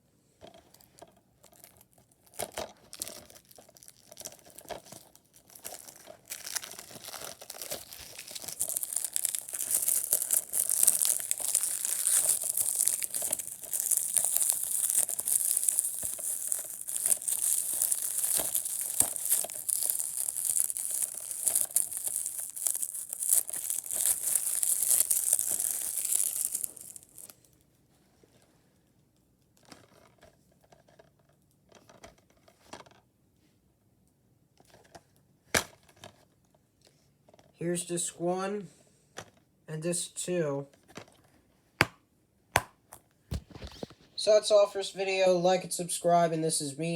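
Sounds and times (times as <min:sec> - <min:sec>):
plastic wrapping crinkling and tearing: 0:00.8 - 0:27.5.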